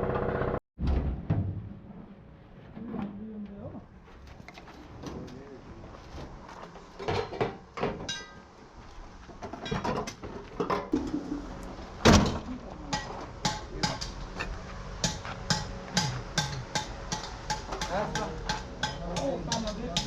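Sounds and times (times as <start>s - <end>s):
loud bang: 0.8s - 2.1s
knocks and clanks: 0.8s - 2.2s, 9.3s - 11.2s, 12.0s - 20.0s
low hum: 11.0s - 20.0s.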